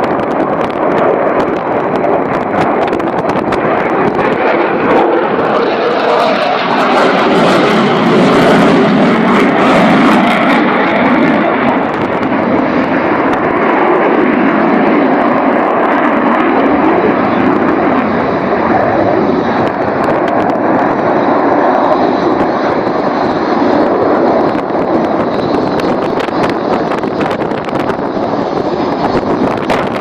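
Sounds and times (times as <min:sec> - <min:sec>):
airplane engine flying over: 0:00.0 - 0:30.0.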